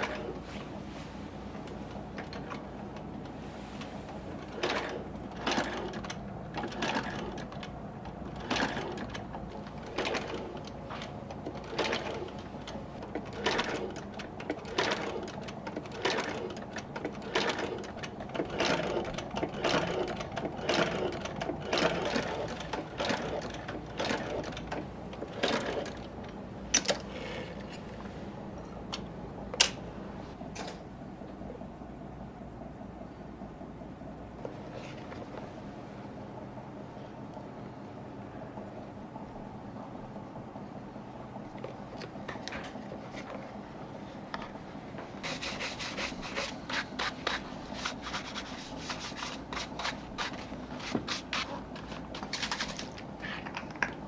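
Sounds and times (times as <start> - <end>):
stitching machine motor hum: 0.0 - 31.0.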